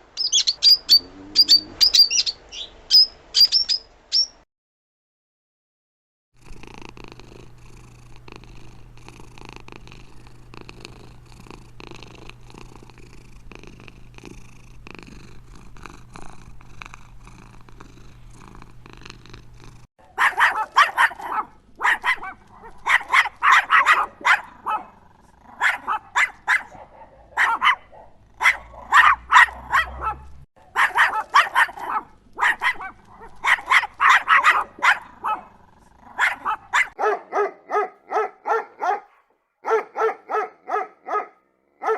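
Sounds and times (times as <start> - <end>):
cat purring: 0.8 - 1.9, 6.4 - 19.9, 24.6 - 26.1
dog barking: 20.0 - 41.9.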